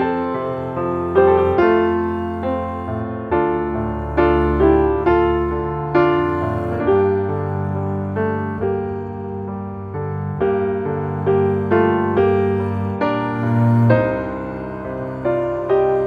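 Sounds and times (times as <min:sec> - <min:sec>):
slow gentle piano music: 0:00.0 - 0:16.0.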